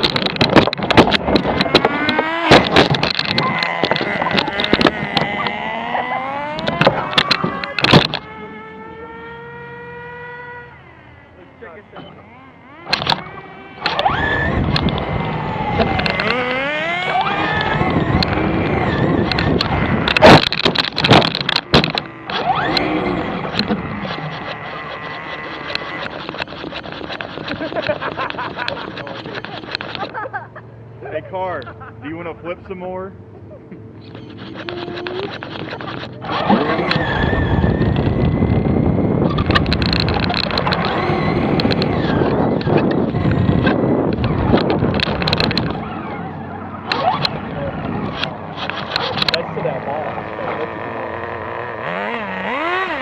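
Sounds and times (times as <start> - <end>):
knocks and clatters: 0.0 - 8.4, 12.9 - 30.3, 34.0 - 46.1, 46.8 - 49.7
electric motor whining: 0.0 - 30.2, 34.0 - 53.0.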